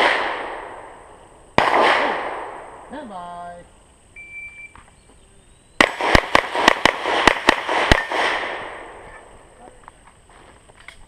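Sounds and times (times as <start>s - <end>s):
pistol shots echoing: 0.0s - 0.9s, 1.6s - 2.8s, 5.8s - 9.0s.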